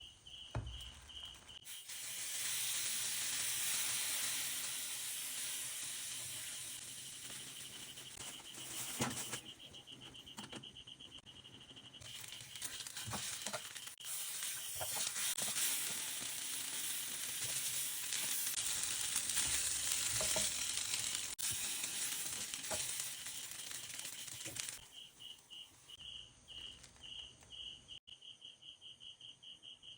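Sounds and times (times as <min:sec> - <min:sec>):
crickets chirping: 0:00.0 - 0:14.8, 0:21.5 - 0:29.9
food frying in hot oil: 0:00.5 - 0:09.4, 0:12.0 - 0:24.8.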